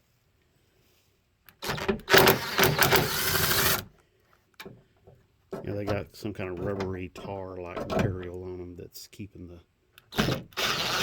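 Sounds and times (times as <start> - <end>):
power tool spinning out bolt: 1.6 - 3.9, 10.1 - 11.0.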